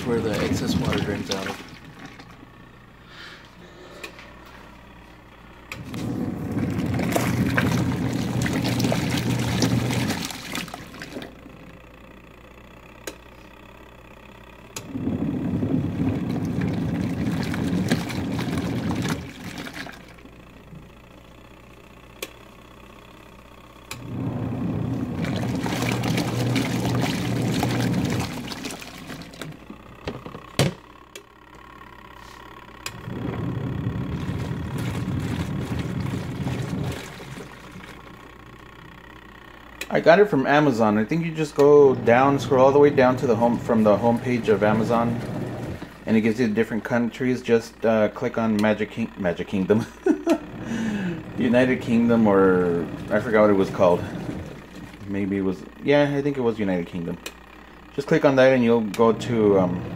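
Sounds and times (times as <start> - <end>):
water sloshing and splashing: 0.0 - 2.7, 5.7 - 11.5, 14.8 - 20.4, 24.0 - 30.6, 32.9 - 38.4, 40.8 - 46.6, 51.2 - 55.3
washing machine motor churning: 0.0 - 59.9.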